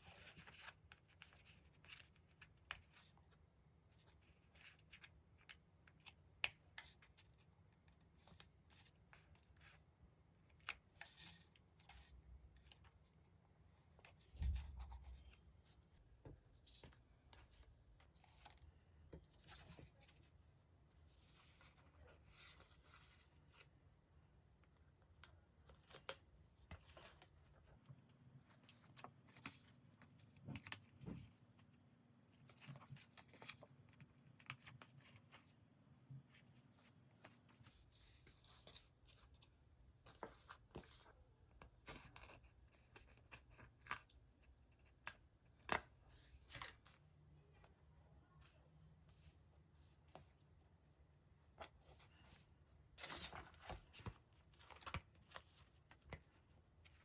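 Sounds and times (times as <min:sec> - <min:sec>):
paper and stickers rustling: 0:13.9 - 0:20.4, 0:24.6 - 0:35.6, 0:51.4 - 0:57.0.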